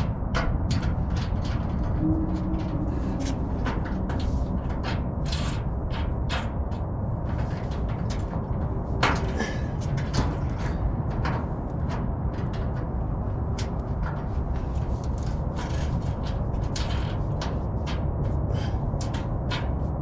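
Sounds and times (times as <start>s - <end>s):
steady low rumble: 0.0s - 20.0s.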